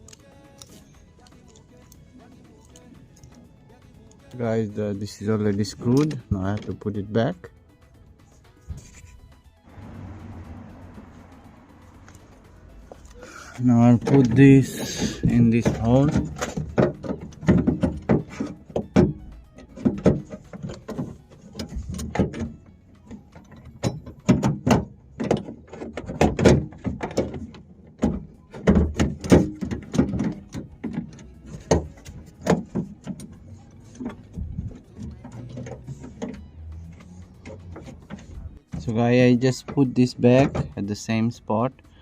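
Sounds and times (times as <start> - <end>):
metal parts clicking and rattling: 0.0 - 3.4, 12.9 - 41.0.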